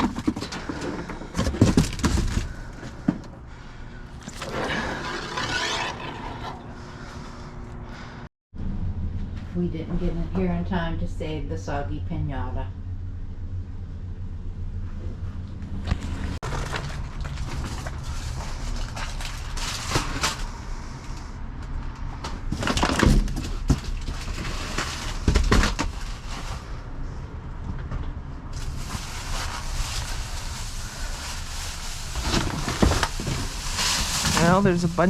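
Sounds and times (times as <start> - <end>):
knocks and crunches: 0.0 - 3.3, 15.9 - 20.5, 22.2 - 26.5
steady low hum: 0.0 - 22.5
plastic bags crinkling and rustling: 16.4 - 20.6, 22.4 - 26.6, 28.6 - 35.0.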